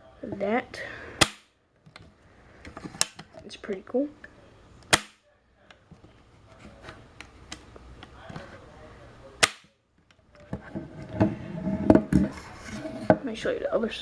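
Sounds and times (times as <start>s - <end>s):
cap gun cracks: 1.2s - 1.5s, 4.8s - 5.2s, 9.4s - 9.7s.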